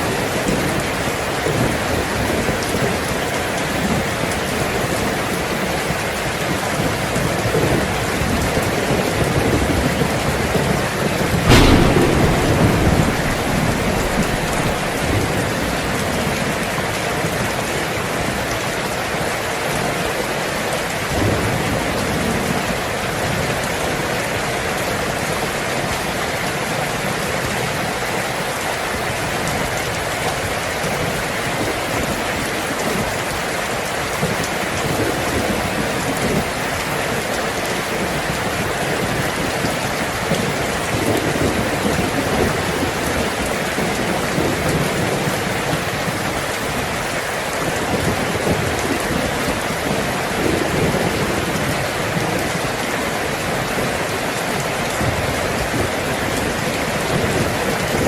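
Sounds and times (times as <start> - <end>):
rain drumming on tin roof: 0.0 - 58.0
low thunder rumble: 7.5 - 17.5
sharp thunderclap: 7.5 - 17.5.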